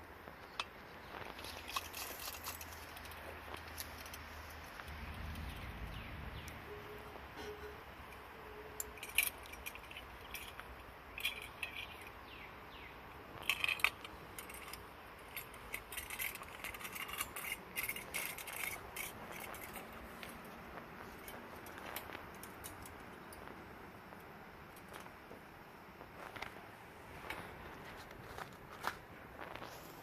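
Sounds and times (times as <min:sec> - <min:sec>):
gear clinking and rattling: 0:00.6 - 0:05.7, 0:06.4 - 0:12.4, 0:13.3 - 0:23.5.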